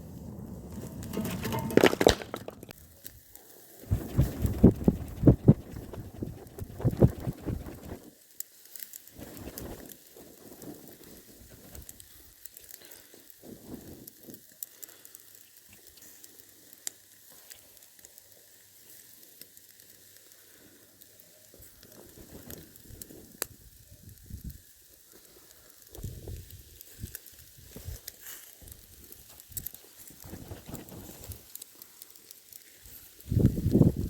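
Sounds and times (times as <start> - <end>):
low rushing of fire: 0.0 - 8.0
wood fire crackling and popping: 0.0 - 34.0.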